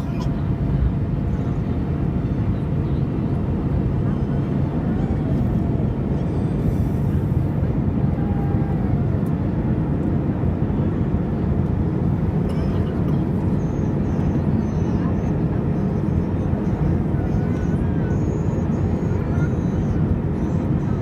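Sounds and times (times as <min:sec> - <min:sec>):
jet airliner rumble: 0:00.0 - 0:21.0.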